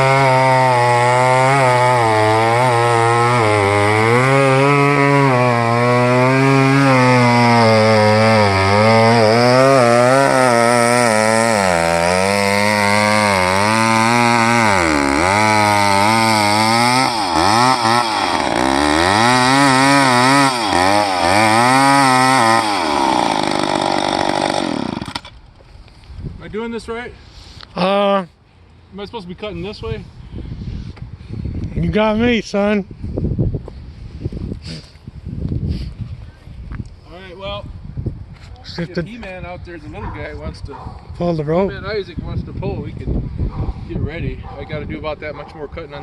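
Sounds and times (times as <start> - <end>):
chainsaw cutting tree trunk: 0.0 - 25.4.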